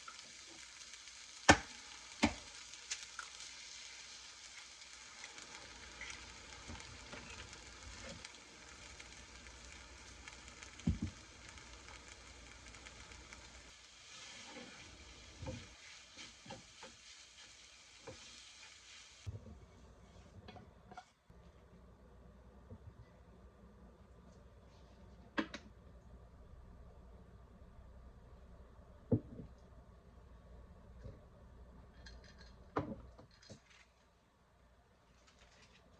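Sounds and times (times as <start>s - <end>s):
food sizzling in a frying pan: 0.0s - 19.3s.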